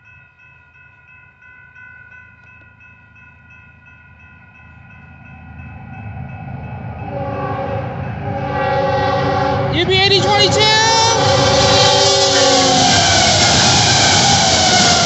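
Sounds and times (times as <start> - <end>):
crossing bell ringing: 0.0 - 15.0
freight train rumble: 2.2 - 15.0
locomotive horn: 7.0 - 15.0.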